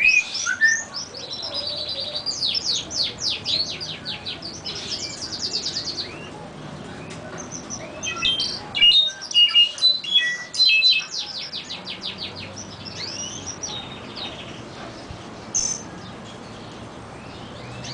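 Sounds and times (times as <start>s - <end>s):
songbirds singing: 0.0s - 17.9s.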